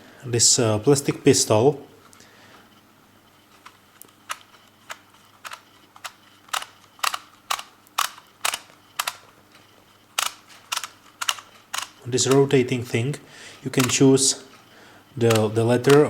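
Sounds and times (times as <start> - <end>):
label maker plastic clicks: 3.5 - 13.0, 13.6 - 16.0.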